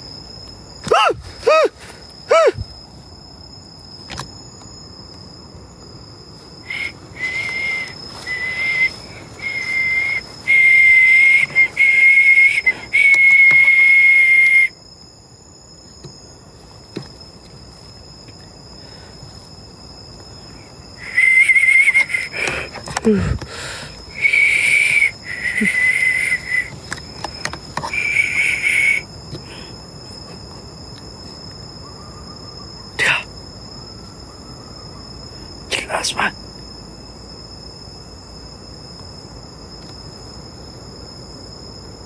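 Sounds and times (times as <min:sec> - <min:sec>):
high steady whistling tone: 0:06.6 - 0:14.8, 0:21.0 - 0:22.5, 0:24.1 - 0:26.9, 0:27.8 - 0:29.1.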